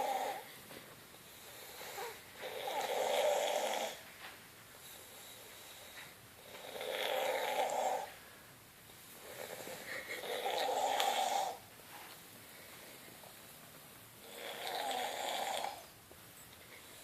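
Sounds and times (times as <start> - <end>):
quiet breathing: 0.0 - 17.0
person snoring: 1.6 - 4.0, 6.4 - 8.1, 9.2 - 11.6, 14.2 - 15.9.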